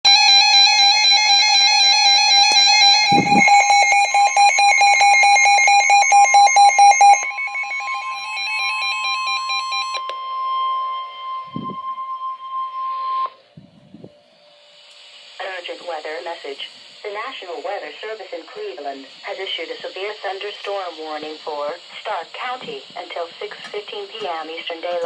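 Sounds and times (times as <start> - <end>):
rapidly pulsing alarm: 0.1 - 13.4
steady warning alarm tone: 0.1 - 13.4.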